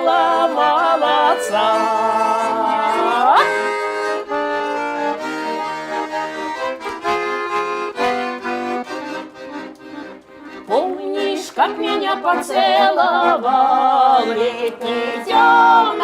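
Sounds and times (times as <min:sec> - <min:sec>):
button accordion playing melody: 0:00.0 - 0:16.0
people singing held note: 0:10.7 - 0:16.0.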